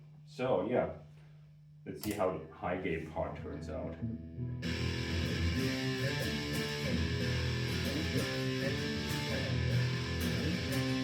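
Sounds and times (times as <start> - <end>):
distorted electric guitar: 3.4 - 11.0.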